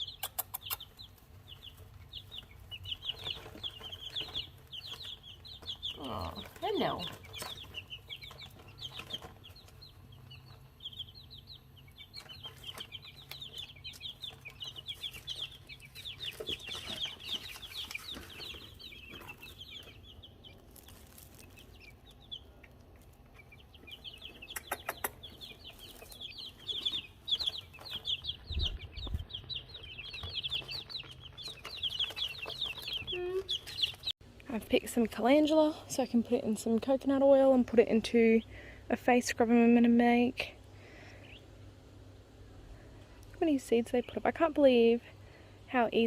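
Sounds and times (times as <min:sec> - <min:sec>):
chicks peeping: 0:00.0 - 0:46.0
sharp clicks: 0:00.1 - 0:00.9, 0:24.5 - 0:25.3.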